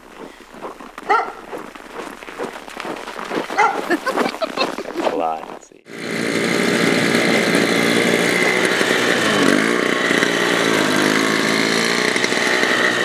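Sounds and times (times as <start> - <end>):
snowblower engine running: 5.8 - 13.0.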